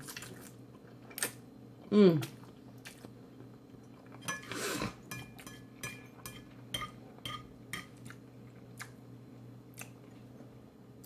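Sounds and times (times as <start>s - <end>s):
utensil clinking against bowl: 4.2s - 8.0s.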